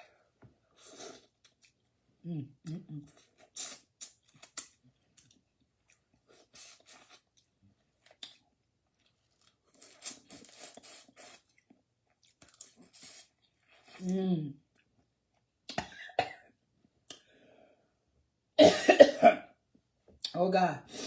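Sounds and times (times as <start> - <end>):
chewing: 3.1 - 14.1.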